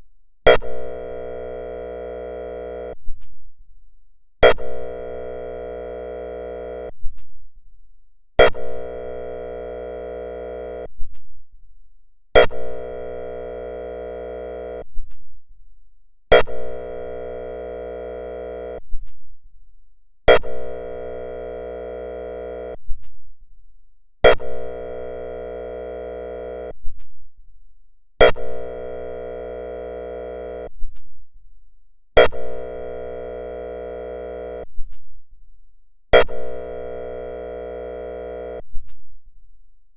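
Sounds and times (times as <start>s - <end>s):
electronic airhorn blasts: 4.4s - 6.9s, 8.4s - 10.9s, 12.4s - 14.9s, 16.4s - 18.8s, 20.3s - 22.8s, 24.2s - 26.7s, 28.3s - 30.7s, 32.2s - 34.7s, 36.2s - 38.7s.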